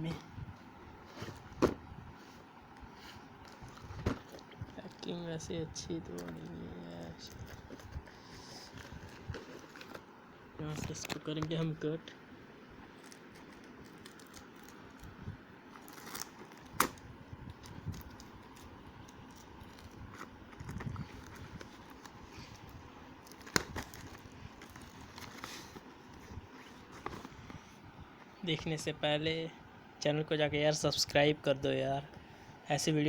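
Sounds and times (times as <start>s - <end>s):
packaging rustling: 3.0s - 5.2s, 6.1s - 10.1s, 12.9s - 27.6s.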